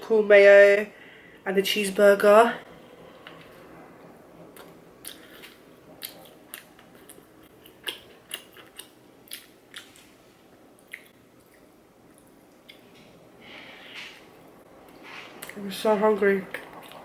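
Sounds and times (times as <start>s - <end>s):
chewing crunchy food: 4.6s - 10.2s, 10.8s - 13.2s, 16.5s - 17.0s.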